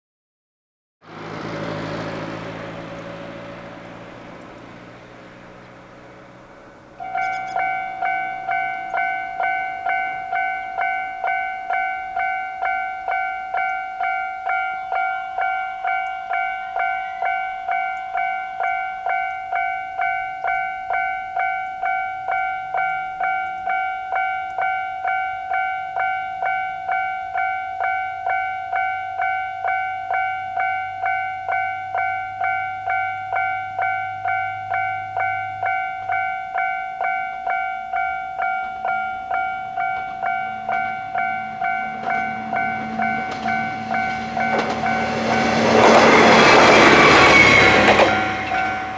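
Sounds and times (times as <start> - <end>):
level crossing alarm tone: 7.0 - 48.9
low hum: 37.2 - 48.9.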